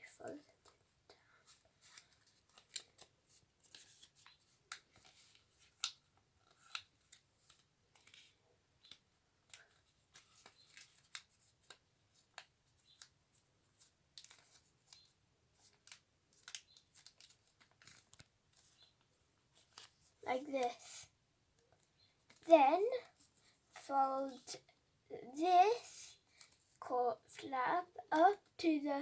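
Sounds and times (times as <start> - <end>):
paper rustling: 1.4 - 21.0
paper crisp clicks and snaps: 1.8 - 13.1, 14.2 - 18.8.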